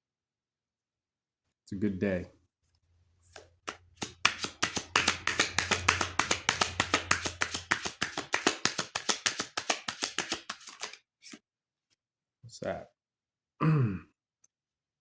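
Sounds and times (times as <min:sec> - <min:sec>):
cards being shuffled: 0:03.3 - 0:11.4.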